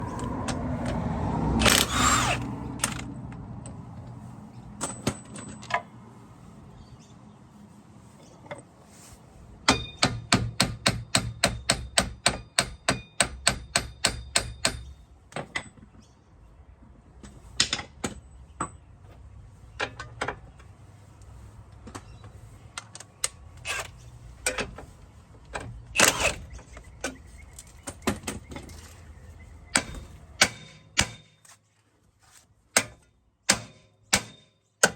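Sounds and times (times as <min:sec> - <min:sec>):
sharp mechanical clicks: 0:01.6 - 0:03.1.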